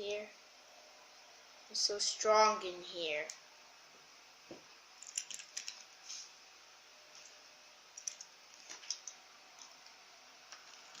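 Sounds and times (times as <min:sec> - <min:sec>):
plastic toy pieces clicking: 0:05.0 - 0:05.8, 0:08.0 - 0:08.3.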